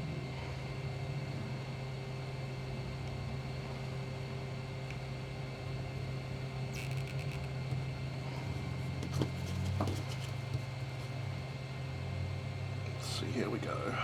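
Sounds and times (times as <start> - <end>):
scratchy clatter: 8.8 - 11.2
small knocks: 9.0 - 11.1.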